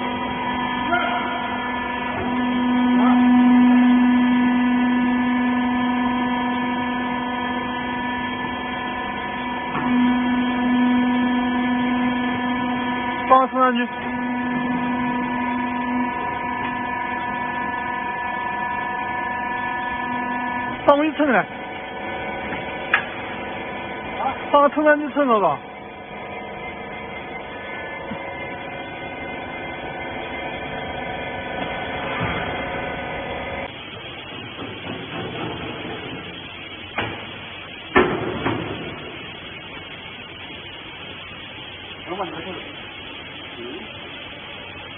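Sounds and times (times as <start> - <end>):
electric pump humming: 0.0 - 44.9.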